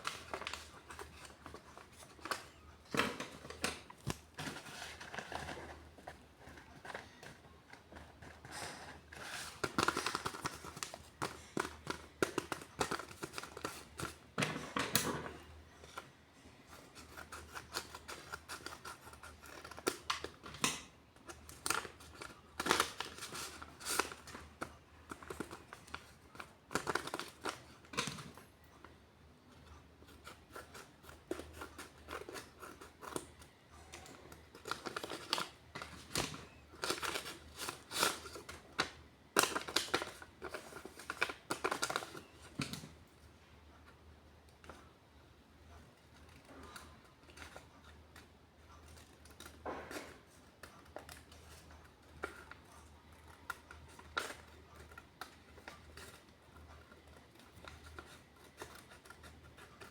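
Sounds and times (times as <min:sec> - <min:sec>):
paper crinkling and tearing: 0:00.0 - 0:02.6, 0:07.8 - 0:14.2, 0:21.2 - 0:28.0, 0:30.2 - 0:42.6.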